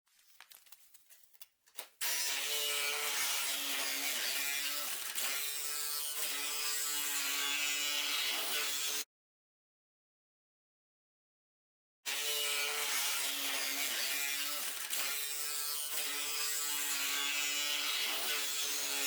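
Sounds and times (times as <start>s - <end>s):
power saw cutting metal: 2.0s - 9.0s, 12.1s - 19.0s.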